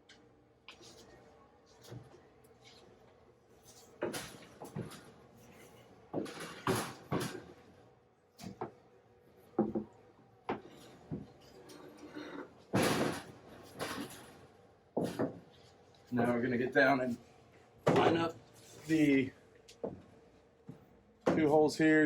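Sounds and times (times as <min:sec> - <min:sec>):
print bed knocking and bumping: 0:09.6 - 0:09.9.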